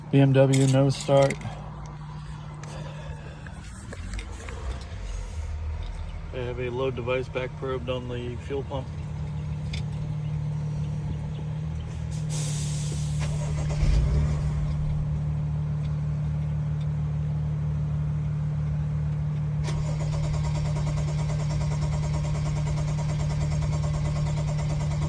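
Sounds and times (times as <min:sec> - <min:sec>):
engine cranking without firing: 0:00.0 - 0:17.1, 0:19.1 - 0:25.0
hiss: 0:12.1 - 0:14.2.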